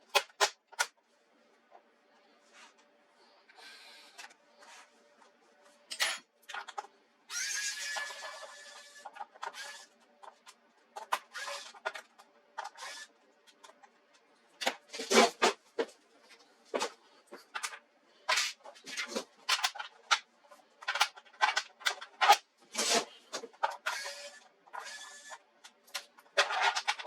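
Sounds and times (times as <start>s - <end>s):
plastic scraping: 16.7s - 24.0s, 26.3s - 27.0s.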